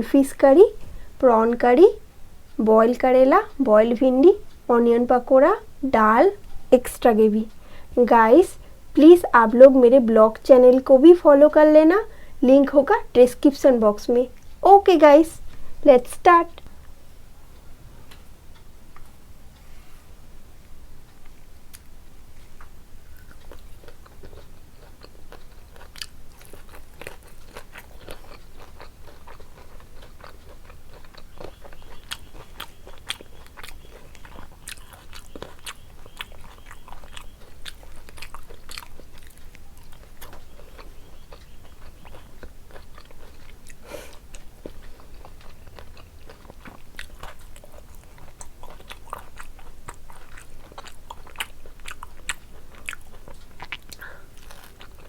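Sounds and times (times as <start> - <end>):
person chewing crunchy food: 21.3 - 55.0.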